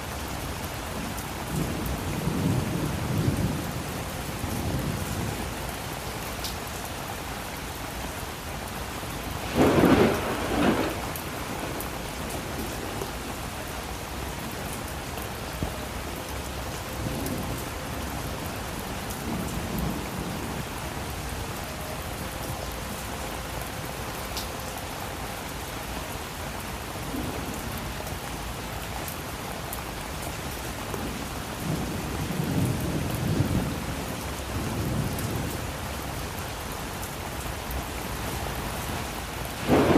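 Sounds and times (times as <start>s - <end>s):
steady rain: 0.0s - 39.9s
loud thunderclap: 9.4s - 12.0s, 39.6s - 39.9s
low thunder rumbles: 9.4s - 14.5s, 30.9s - 35.7s, 39.6s - 39.9s.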